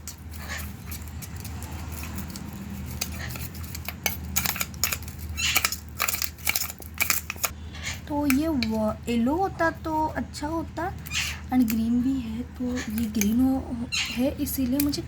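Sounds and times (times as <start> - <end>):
spoon stirring slime in a bowl: 0.0 - 7.5, 10.9 - 15.0.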